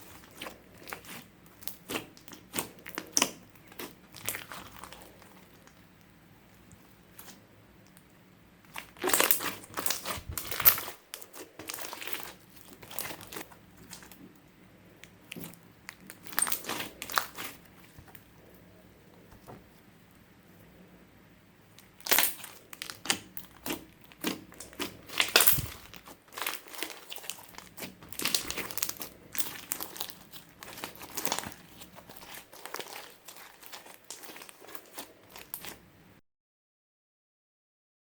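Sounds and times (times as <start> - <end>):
slime crackling and popping: 0.0 - 7.4, 8.7 - 14.2, 15.0 - 18.3, 21.8 - 35.8.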